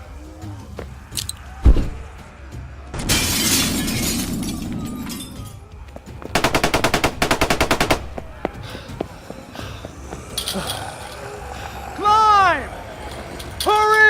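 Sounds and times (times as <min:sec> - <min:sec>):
machine-gun fire: 0:06.4 - 0:08.4.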